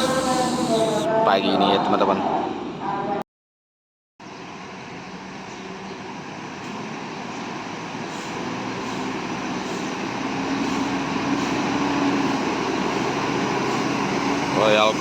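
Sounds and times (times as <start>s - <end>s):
bus diesel engine humming: 0.0s - 1.2s, 4.2s - 15.0s.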